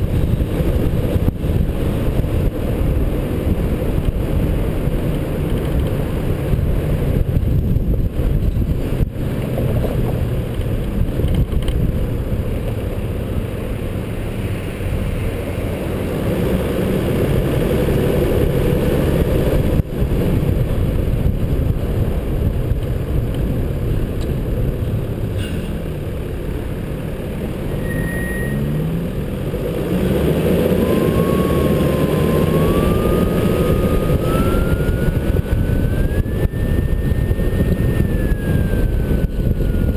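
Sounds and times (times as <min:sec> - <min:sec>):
road noise: 0:00.0 - 0:39.9
vehicle engine rumble: 0:00.0 - 0:39.9
thin wavering tone: 0:27.7 - 0:28.8.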